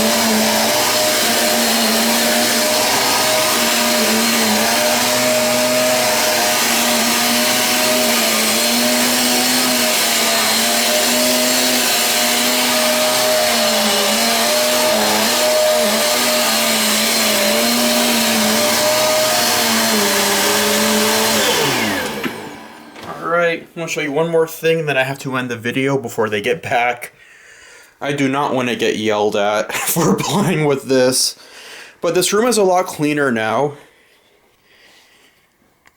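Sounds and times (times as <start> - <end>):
vacuum cleaner running: 0.0 - 23.4.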